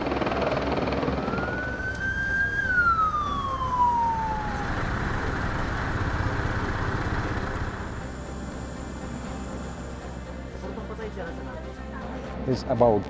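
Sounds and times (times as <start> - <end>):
emergency vehicle siren wailing: 0.8 - 7.9.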